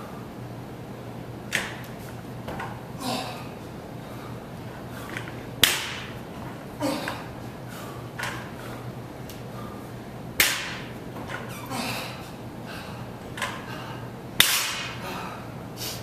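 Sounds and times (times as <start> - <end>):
heavy breathing: 3.0 - 5.4, 6.8 - 10.0, 11.6 - 14.2, 15.0 - 16.0.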